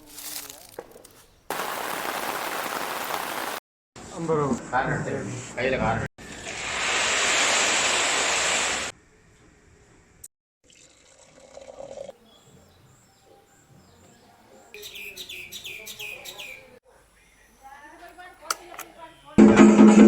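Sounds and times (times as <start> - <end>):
bird chirping: 12.2 - 17.8.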